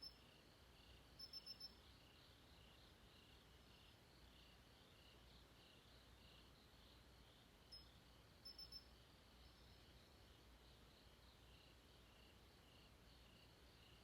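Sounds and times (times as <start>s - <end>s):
crickets trilling: 0.0s - 7.0s, 7.6s - 10.1s.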